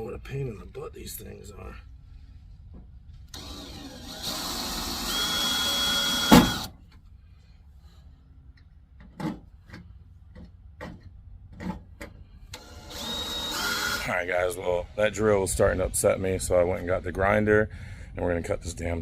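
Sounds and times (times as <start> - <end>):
electric drill whining: 3.3 - 6.7, 12.6 - 14.1
sharp bang of drill bit: 5.9 - 6.7.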